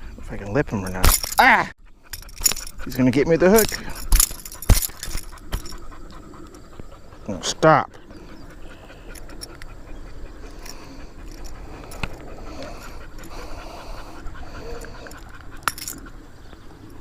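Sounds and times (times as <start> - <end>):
breathy rustling noise: 3.6 - 7.3, 10.3 - 16.3.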